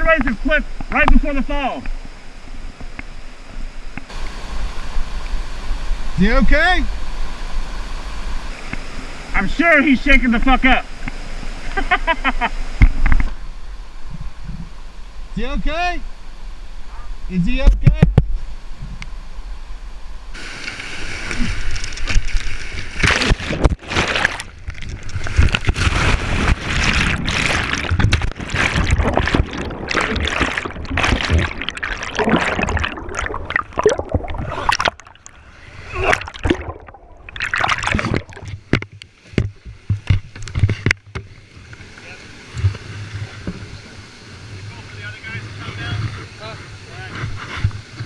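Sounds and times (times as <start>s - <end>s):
whitewater rushing and splashing: 20.3s - 38.8s.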